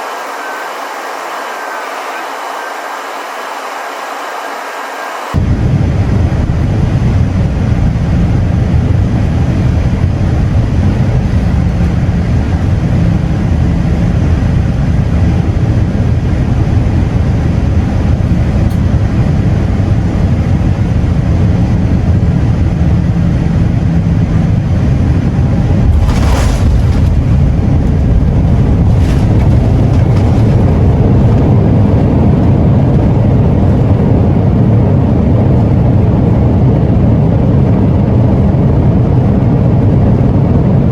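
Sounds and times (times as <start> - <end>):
airplane cabin engine roar: 0.0 - 40.9
burst of noise: 25.8 - 31.5.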